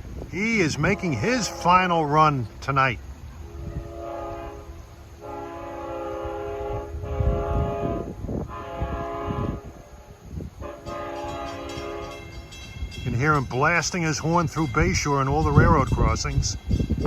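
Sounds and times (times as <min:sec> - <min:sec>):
locomotive air horn blasts: 0:00.4 - 0:02.2, 0:03.4 - 0:12.6.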